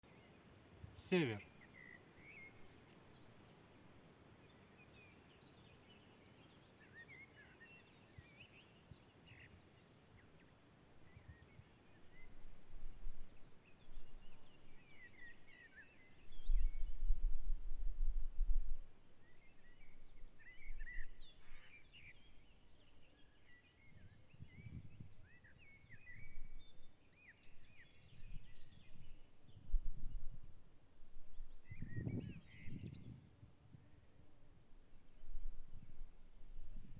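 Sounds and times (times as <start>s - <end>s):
crickets chirring: 0.1s - 36.9s
wind buffeting microphone: 31.5s - 33.9s.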